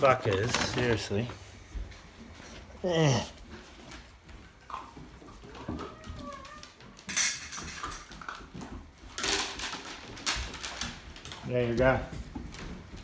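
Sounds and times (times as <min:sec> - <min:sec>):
dry pet food rattling into bowl: 0:06.6 - 0:12.2.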